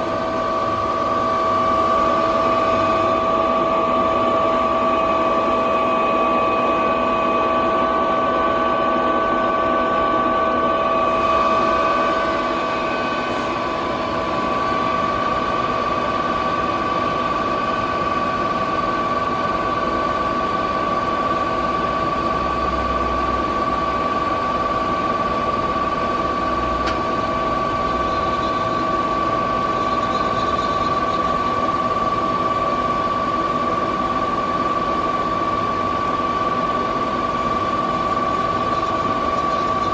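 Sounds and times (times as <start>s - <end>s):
lathe machine whining: 0.0s - 39.9s
constant hum and hiss: 10.1s - 39.9s.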